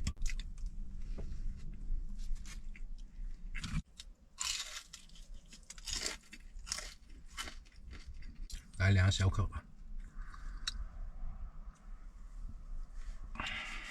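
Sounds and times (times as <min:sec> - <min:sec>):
low steady hum: 0:00.0 - 0:13.9
man chewing food: 0:02.2 - 0:08.6.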